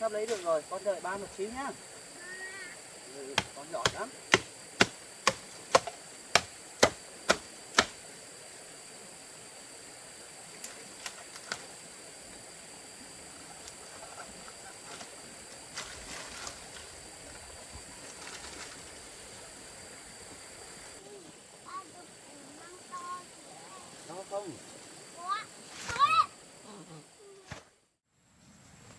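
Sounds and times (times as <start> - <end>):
blade chopping bamboo: 3.4 - 8.0.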